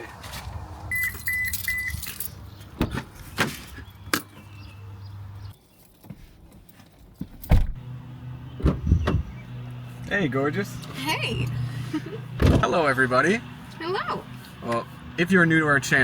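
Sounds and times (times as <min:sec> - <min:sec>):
car warning chime beeps: 0:00.9 - 0:02.0
car door shutting thump: 0:07.4 - 0:07.8, 0:08.6 - 0:09.4, 0:12.4 - 0:12.7.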